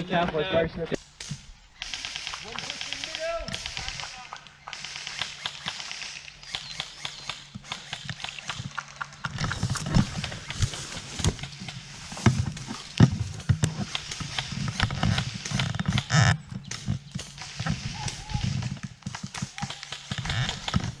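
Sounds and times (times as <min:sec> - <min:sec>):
twigs cracking: 0:01.2 - 0:21.0
footsteps through leaf litter: 0:09.5 - 0:13.4.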